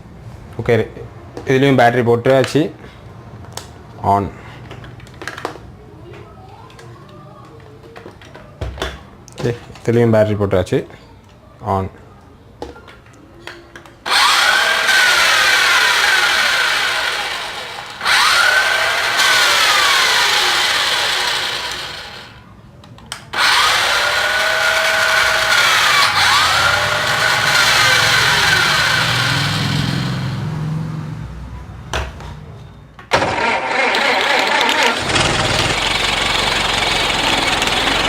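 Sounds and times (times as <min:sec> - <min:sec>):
toy car motors whirring: 0:14.1 - 0:22.4, 0:23.3 - 0:30.3, 0:33.2 - 0:38.0.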